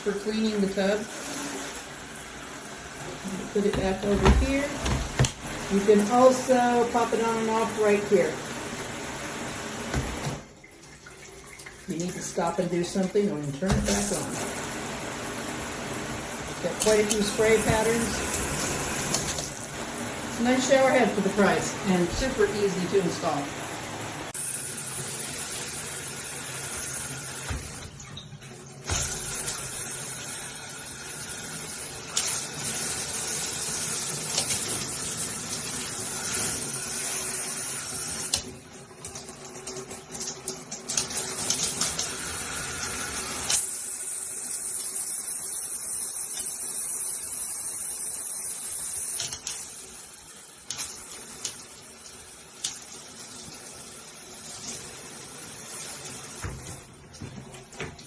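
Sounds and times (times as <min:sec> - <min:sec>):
shower head spraying water: 0:00.1 - 0:10.4, 0:11.9 - 0:27.8.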